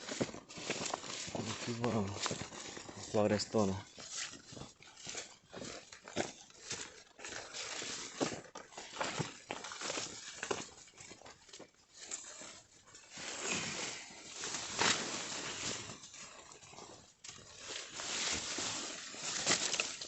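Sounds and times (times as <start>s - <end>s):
leaves rustling: 0.0s - 5.8s, 11.9s - 16.3s, 17.3s - 20.0s
footsteps on forest trail: 0.0s - 20.0s.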